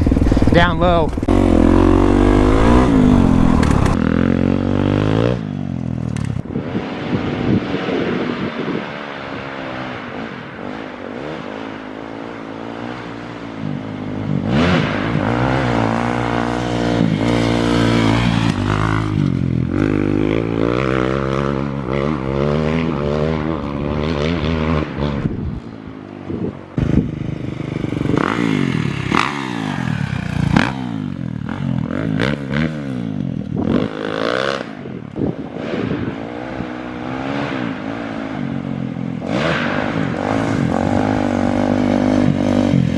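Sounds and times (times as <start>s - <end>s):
dirt bike engine revving: 0.0s - 25.6s, 26.2s - 42.9s.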